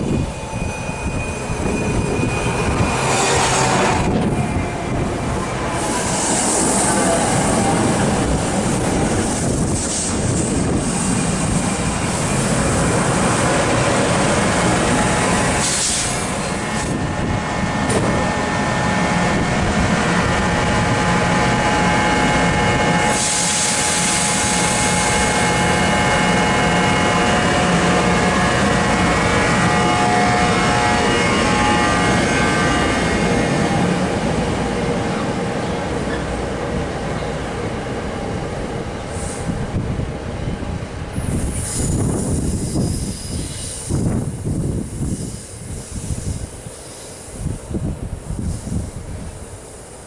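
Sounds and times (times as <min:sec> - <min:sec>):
train wheels rumbling on rails: 0:00.0 - 0:50.0.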